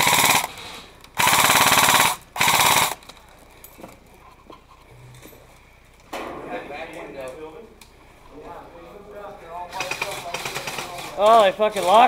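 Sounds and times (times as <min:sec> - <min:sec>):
airsoft gun full-auto bursts: 0:00.0 - 0:00.6, 0:01.2 - 0:03.0, 0:09.8 - 0:11.1.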